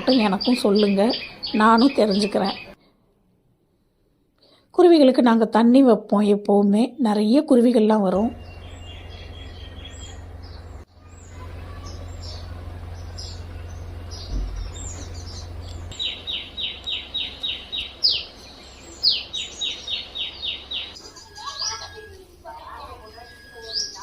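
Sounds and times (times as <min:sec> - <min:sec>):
small birds chirping: 0:00.0 - 0:02.8, 0:08.2 - 0:24.0
low steady hum: 0:08.0 - 0:24.0.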